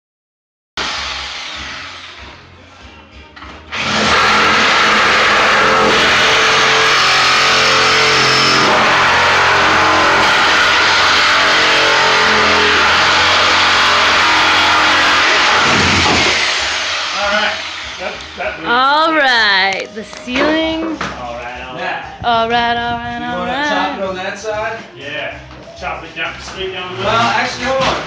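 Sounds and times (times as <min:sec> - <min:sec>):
electric motor running: 0:03.7 - 0:18.4.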